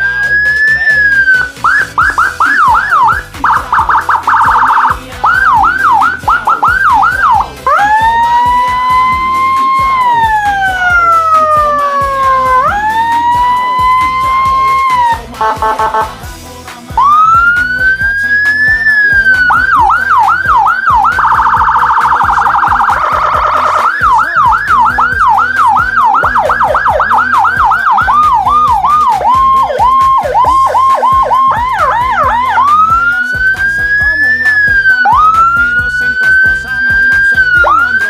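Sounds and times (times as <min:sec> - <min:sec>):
electronic siren wailing and yelping: 0:00.0 - 0:16.2, 0:16.9 - 0:38.0.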